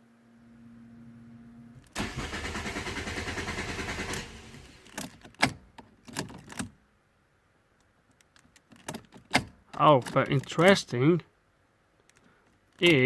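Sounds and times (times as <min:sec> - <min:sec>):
faint steady hum: 0:00.0 - 0:13.0
engine cranking on starter motor: 0:01.9 - 0:05.0
sharp clicks and knocks: 0:07.8 - 0:11.0.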